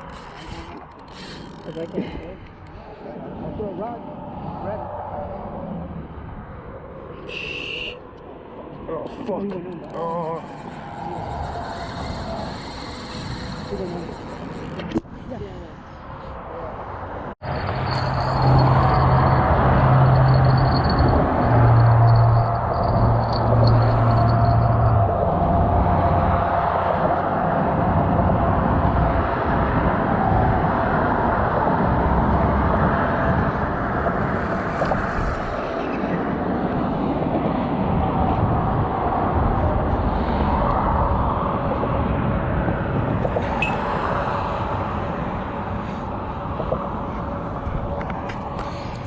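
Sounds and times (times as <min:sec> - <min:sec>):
road traffic on bridge: 0:00.0 - 0:49.0
vehicles passing: 0:00.0 - 0:49.0.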